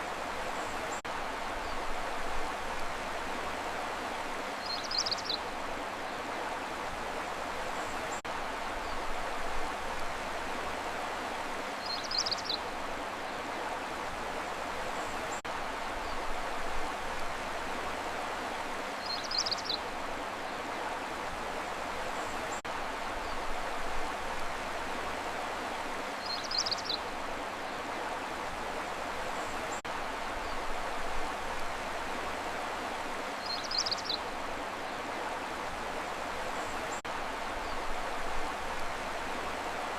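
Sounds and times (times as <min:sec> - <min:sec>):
stream flowing: 0:00.0 - 0:39.9.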